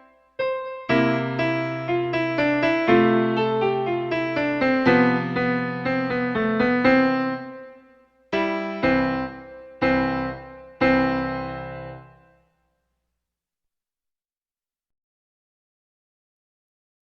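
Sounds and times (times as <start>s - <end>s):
piano music: 0.0s - 12.4s.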